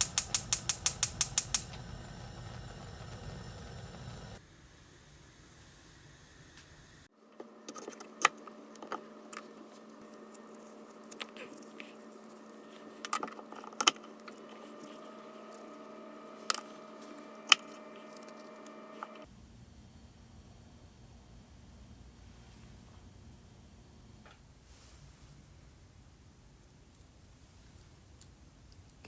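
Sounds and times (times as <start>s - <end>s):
sharp clinks and taps: 0.0s - 1.8s
steady hum: 0.0s - 4.4s, 13.9s - 19.3s
steady tone: 14.3s - 19.2s.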